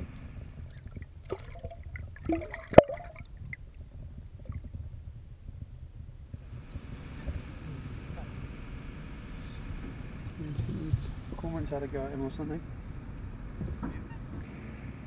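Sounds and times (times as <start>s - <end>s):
water lapping: 0.0s - 4.9s.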